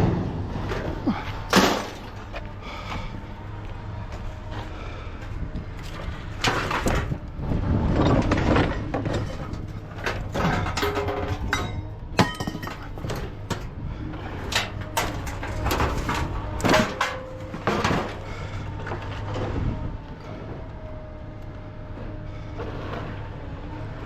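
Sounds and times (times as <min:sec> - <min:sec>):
scrap metal clanking: 0:07.9 - 0:19.5.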